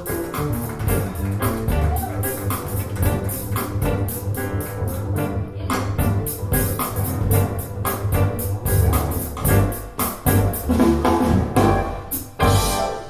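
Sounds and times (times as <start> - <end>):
piano-led music with drums and bass: 0.0 - 13.0.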